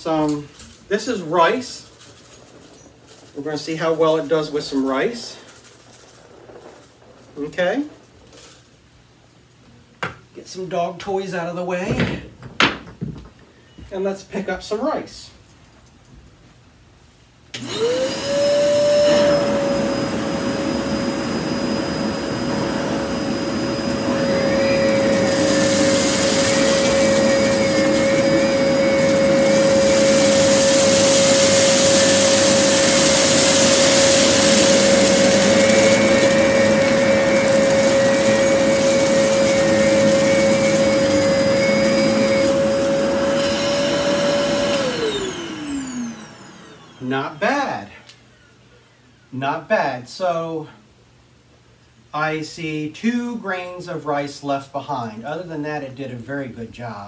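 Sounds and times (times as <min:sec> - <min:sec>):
rushing hiss of suction: 0:17.6 - 0:46.8
vacuum cleaner motor whine: 0:17.6 - 0:47.4.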